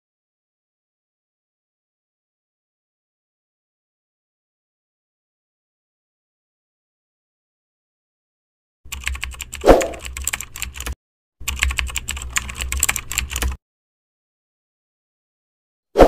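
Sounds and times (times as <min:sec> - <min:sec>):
rapid keyboard clicking: 0:08.9 - 0:13.6.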